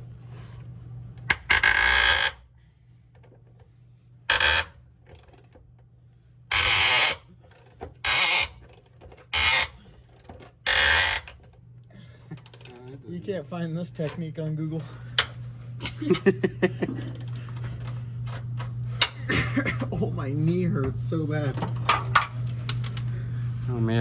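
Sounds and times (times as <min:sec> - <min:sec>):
steady low hum: 0:00.0 - 0:24.0
impact wrench hammering: 0:04.3 - 0:05.5, 0:06.5 - 0:11.4.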